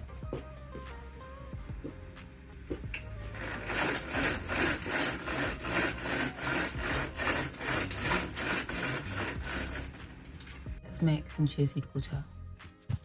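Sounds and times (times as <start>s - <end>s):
rhythmic knocking with ringing: 2.7s - 10.1s.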